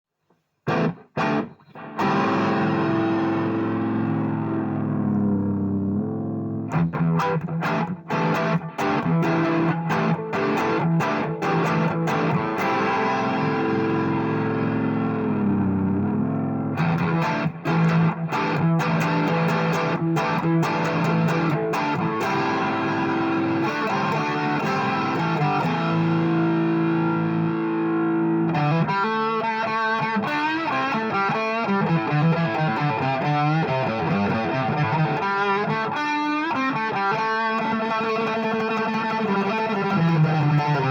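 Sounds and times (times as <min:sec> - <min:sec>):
distorted electric guitar: 0:00.6 - 0:40.9.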